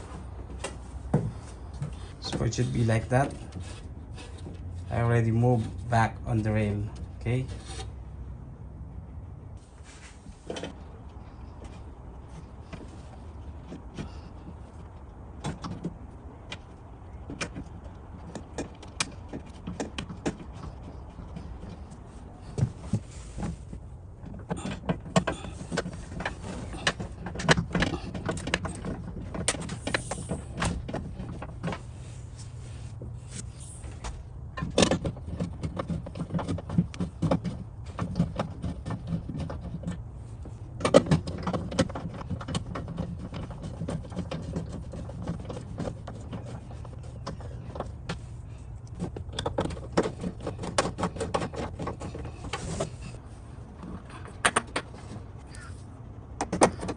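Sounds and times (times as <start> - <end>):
clicks knocks and rattles of tools: 10.4 - 31.9, 34.0 - 53.2, 53.8 - 56.9.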